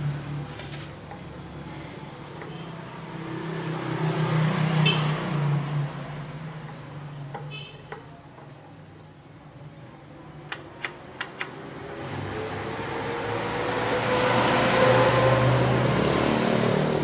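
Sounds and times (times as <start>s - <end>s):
sharp clicks: 10.5s - 11.6s.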